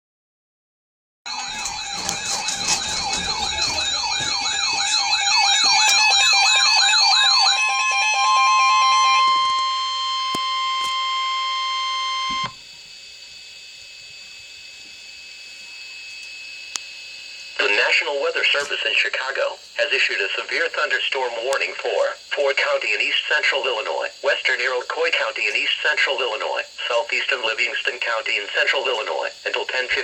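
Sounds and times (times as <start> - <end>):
wavering electronic siren wails: 1.3 - 12.8
steady high alarm tone: 1.3 - 30.0
faint radio hiss: 17.6 - 30.0.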